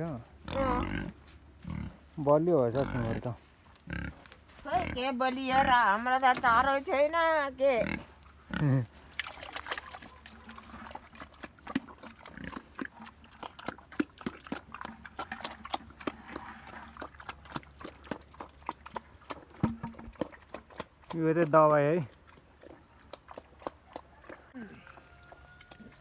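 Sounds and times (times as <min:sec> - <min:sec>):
pig grunting: 0:00.4 - 0:04.2, 0:07.8 - 0:09.0, 0:10.5 - 0:17.1.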